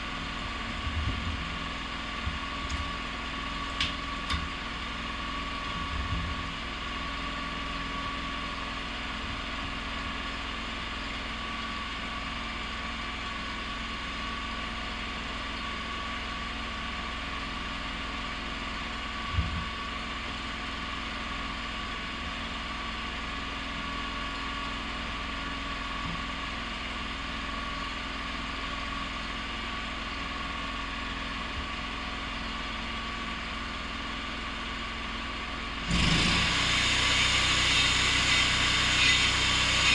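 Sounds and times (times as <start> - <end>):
mechanical engine hum: 0.0 - 8.3, 30.2 - 39.9.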